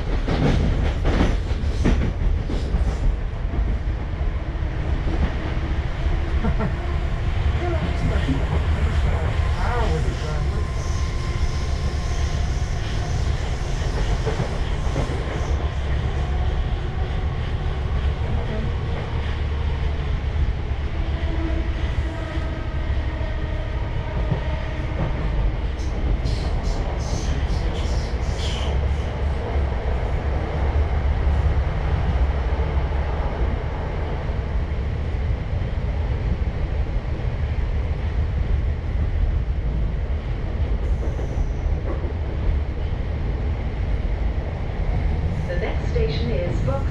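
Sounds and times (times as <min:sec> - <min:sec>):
train wheels rumbling on rails: 0:00.0 - 0:46.9.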